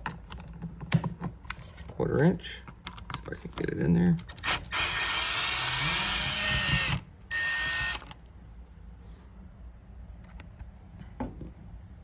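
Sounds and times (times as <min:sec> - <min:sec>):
power driver whirring: 0:04.3 - 0:08.2.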